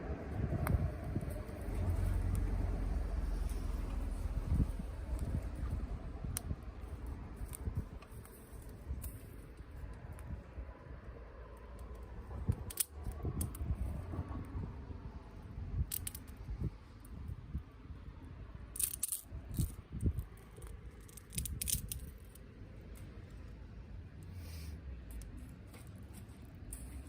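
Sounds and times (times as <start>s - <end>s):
low rumble: 0.0s - 9.0s.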